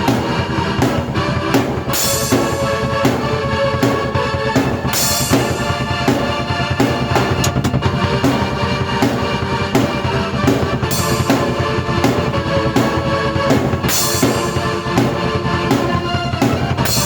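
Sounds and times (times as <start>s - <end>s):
keyboard chords: 0.0s - 17.0s
bass drum and snare beat: 0.1s - 17.0s
cymbal crashes: 9.8s - 11.6s.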